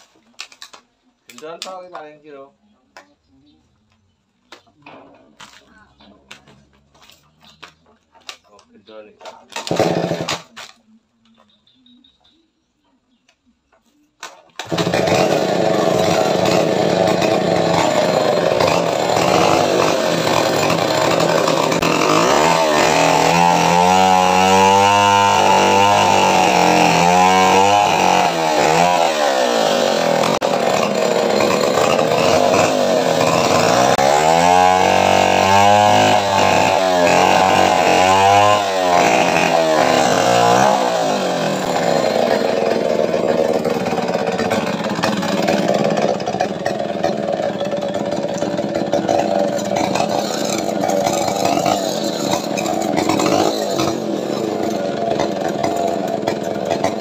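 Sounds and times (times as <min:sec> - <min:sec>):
chainsaw cutting wood: 0:09.2 - 0:10.8, 0:14.2 - 0:57.0.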